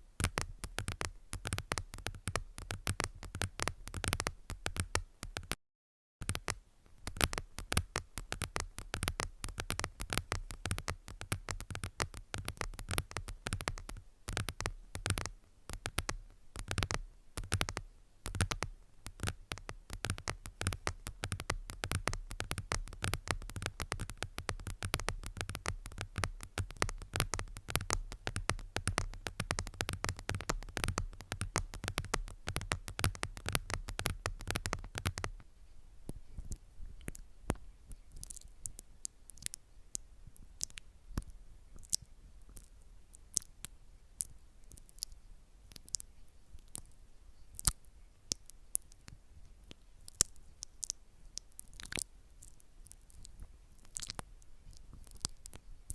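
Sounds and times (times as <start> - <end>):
rapid tapping and clicking: 0.0 - 5.6, 6.2 - 35.4.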